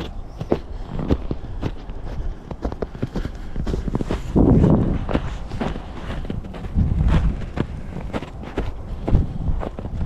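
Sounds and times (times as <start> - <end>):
boots crunching on snow: 0.0 - 10.0.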